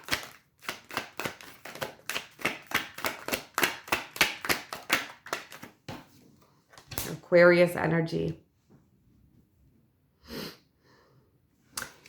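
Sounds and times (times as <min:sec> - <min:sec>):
cards being shuffled: 0:00.0 - 0:07.1.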